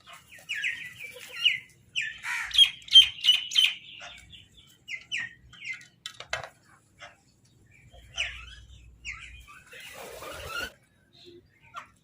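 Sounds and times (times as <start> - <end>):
crows cawing: 2.2 - 2.7.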